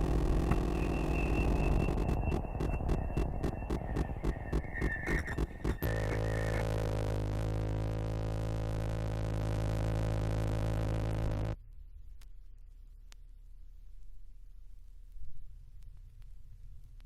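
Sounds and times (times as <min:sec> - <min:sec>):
synthesizer drone: 0:00.0 - 0:11.6
low hum and faint hiss: 0:11.5 - 0:17.0.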